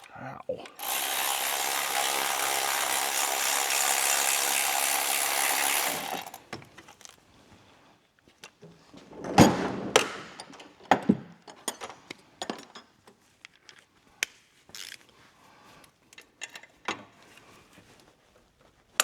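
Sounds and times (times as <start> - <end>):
rasping tool noise: 0.6 - 6.5.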